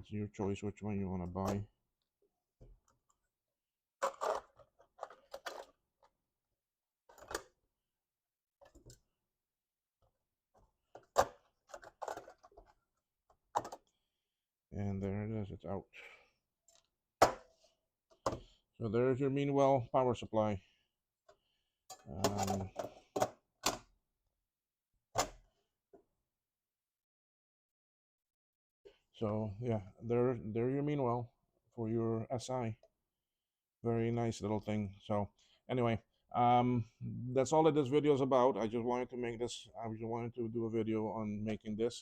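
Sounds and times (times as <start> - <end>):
plastic and metal clicks and knocks: 7.1 - 7.6, 10.8 - 14.0, 21.3 - 23.9.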